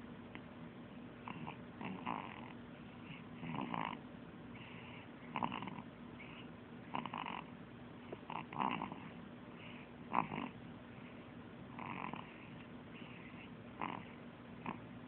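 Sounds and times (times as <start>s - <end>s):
baby snoring: 1.2s - 4.0s, 4.6s - 7.5s, 8.2s - 10.6s, 11.8s - 14.8s.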